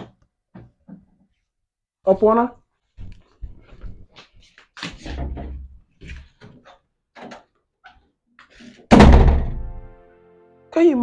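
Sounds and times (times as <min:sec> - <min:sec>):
door slamming: 0:08.9 - 0:09.9.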